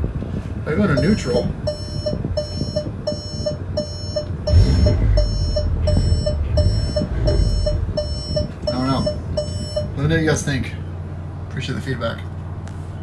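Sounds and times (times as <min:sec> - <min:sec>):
electronic warning beeping: 0:01.0 - 0:09.9
car engine revving: 0:04.5 - 0:09.4.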